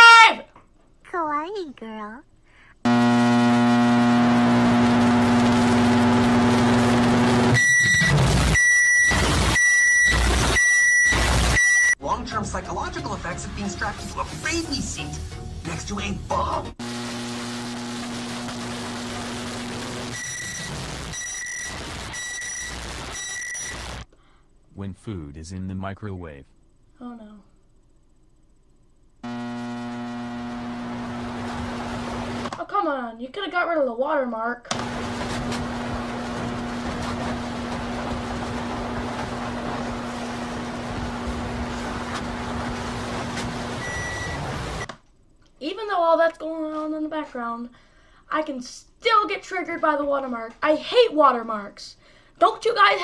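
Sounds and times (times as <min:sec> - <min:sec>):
microwave oven humming: 0:02.9 - 0:11.9, 0:16.8 - 0:21.1, 0:26.6 - 0:32.6, 0:34.7 - 0:44.9
short high beeps: 0:43.8 - 0:44.4.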